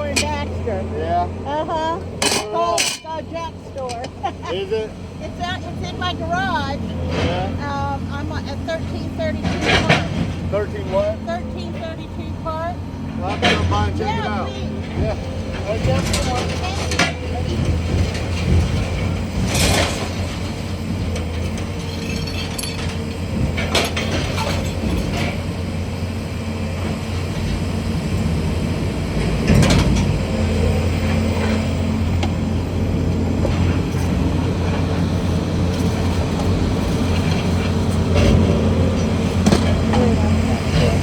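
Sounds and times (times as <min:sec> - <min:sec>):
engine idling: 0:00.0 - 0:41.0.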